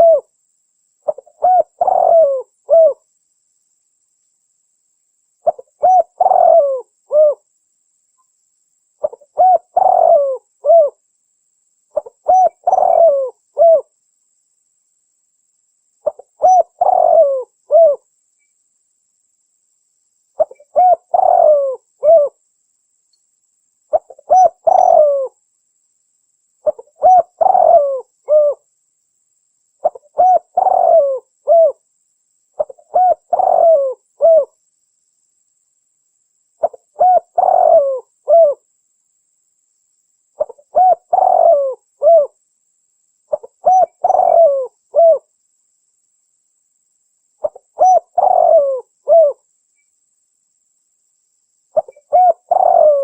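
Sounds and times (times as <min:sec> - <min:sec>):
dove cooing: 0:00.0 - 0:00.3, 0:01.0 - 0:03.0, 0:05.4 - 0:07.4, 0:09.0 - 0:11.0, 0:12.0 - 0:13.9, 0:16.0 - 0:18.1, 0:20.4 - 0:22.4, 0:23.9 - 0:25.4, 0:26.6 - 0:28.6, 0:29.8 - 0:31.8, 0:32.6 - 0:34.6, 0:36.6 - 0:38.6, 0:40.4 - 0:42.4, 0:43.3 - 0:45.3, 0:47.4 - 0:49.4, 0:51.8 - 0:53.0.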